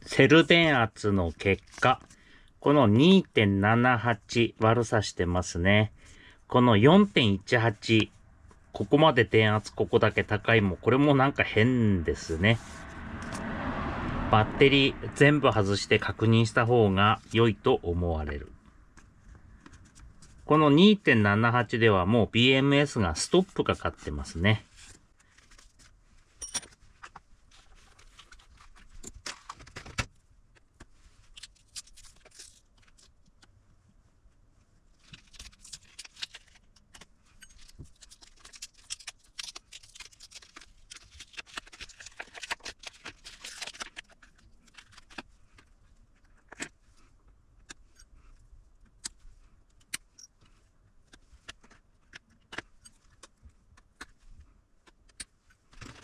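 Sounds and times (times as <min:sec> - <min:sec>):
hands clicking and tapping parts: 0:35.0 - 0:56.0.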